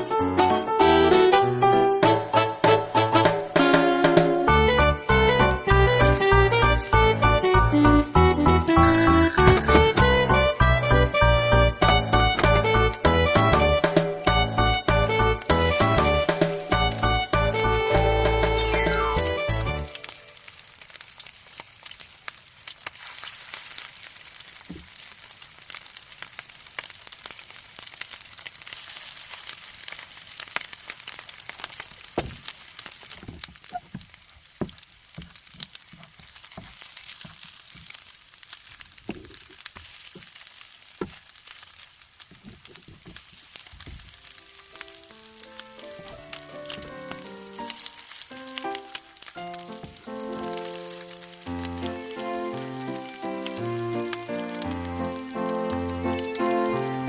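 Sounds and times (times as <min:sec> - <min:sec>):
batter sizzling in frying pan: 0:00.8 - 0:57.0
soft knocks: 0:09.4 - 0:10.2.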